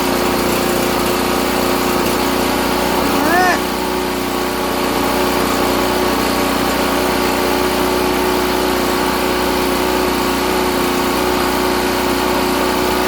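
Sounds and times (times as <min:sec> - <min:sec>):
generator engine running: 0:00.0 - 0:13.0.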